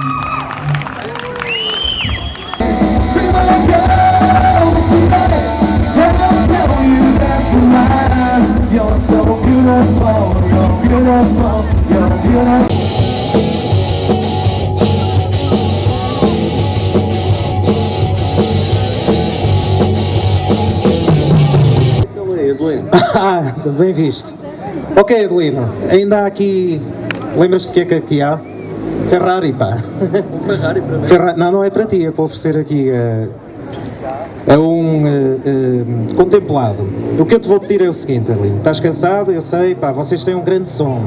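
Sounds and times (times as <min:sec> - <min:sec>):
rock band playing live: 0:02.6 - 0:22.1.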